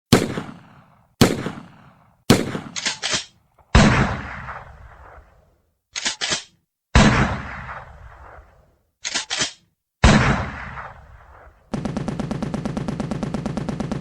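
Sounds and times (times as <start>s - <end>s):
heavy gunshot with echoing tail: 0.1s - 2.8s, 3.7s - 5.4s, 7.0s - 8.6s, 10.0s - 14.0s
gunshots: 0.1s - 14.0s.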